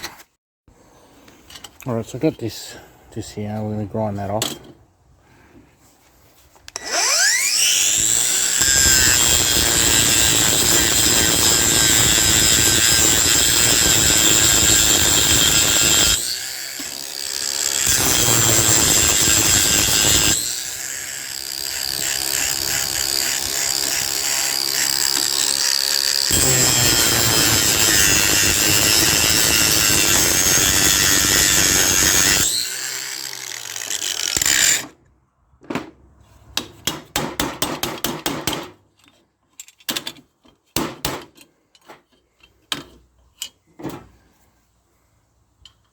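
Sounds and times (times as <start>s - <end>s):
electric grinder grinding metal: 6.8s - 34.8s.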